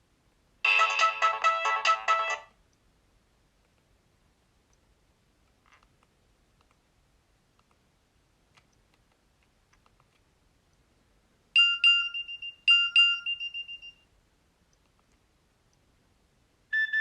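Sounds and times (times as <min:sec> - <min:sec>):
faint clicks: 0:08.5 - 0:10.8
mobile phone alert tone: 0:16.7 - 0:17.0.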